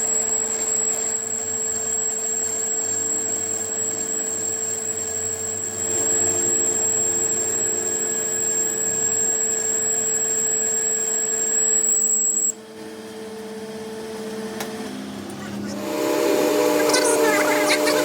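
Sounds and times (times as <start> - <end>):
power tool whining: 0.0 - 12.7
machine hum: 0.0 - 18.0.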